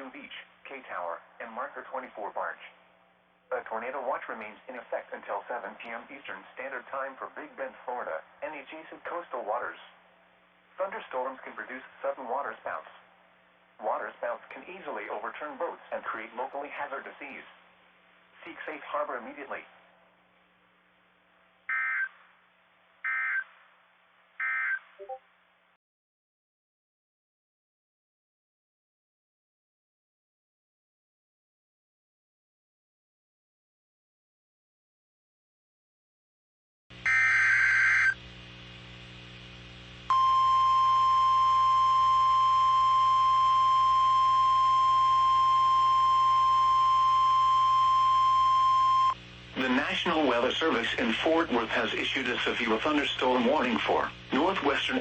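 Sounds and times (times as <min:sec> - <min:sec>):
faint steady hum: 0:00.0 - 0:25.8, 0:36.9 - 0:55.0
harsh buzzing data screech: 0:23.0 - 0:23.4, 0:37.0 - 0:38.2
steady alarm tone: 0:37.0 - 0:38.2, 0:40.1 - 0:49.2.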